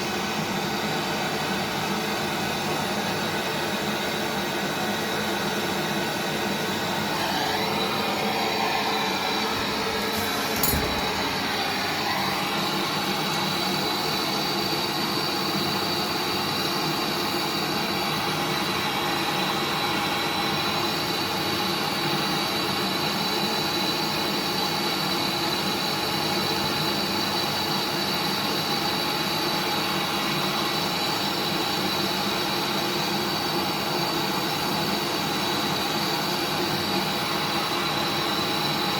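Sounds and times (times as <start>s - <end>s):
torch flame hissing: 7.0s - 17.5s.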